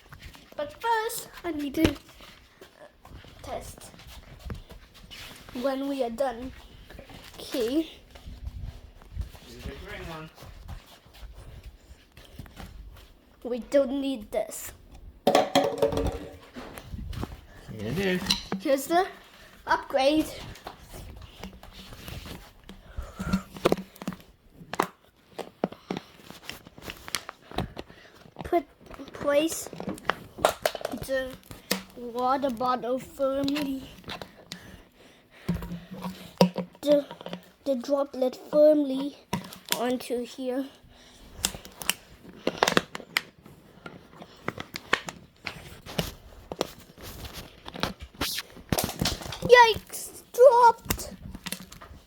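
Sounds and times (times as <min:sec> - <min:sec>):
plastic parts clicking and knocking: 0:15.3 - 0:16.4, 0:28.9 - 0:32.0, 0:35.5 - 0:37.4.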